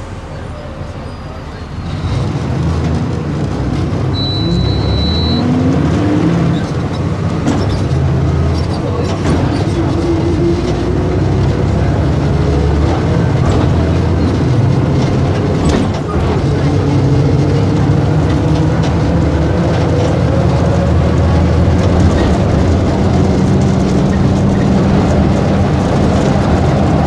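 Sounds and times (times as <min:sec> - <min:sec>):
bus diesel engine running: 0:00.0 - 0:27.0
short high beep: 0:04.1 - 0:05.5.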